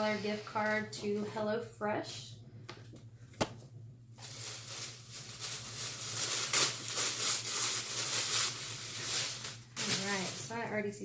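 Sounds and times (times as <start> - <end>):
packing paper rustling: 4.2 - 10.8.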